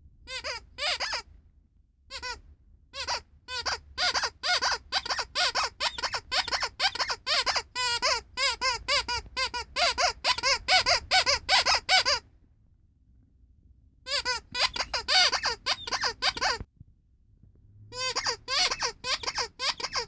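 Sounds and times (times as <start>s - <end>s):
rubber squeaky toy squeaking: 0.3s - 1.3s, 2.1s - 12.3s, 14.1s - 16.7s, 17.9s - 20.0s.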